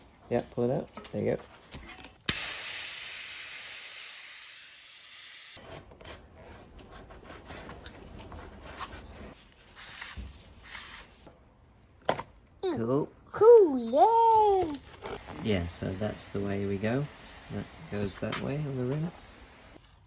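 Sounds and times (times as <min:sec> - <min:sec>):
air hissing out of tyre: 0:02.3 - 0:05.6.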